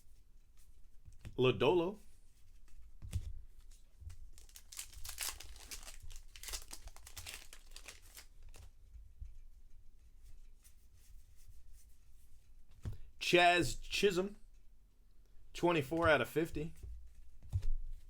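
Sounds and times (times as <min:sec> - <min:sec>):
wrapper tearing and crinkling: 0:04.3 - 0:08.6.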